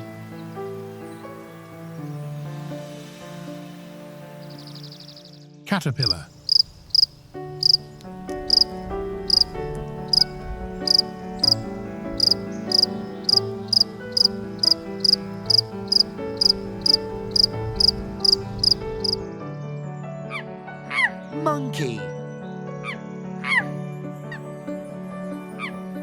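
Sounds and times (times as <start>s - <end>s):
background music of held notes: 0.0s - 26.0s
insect chirping: 6.0s - 19.2s.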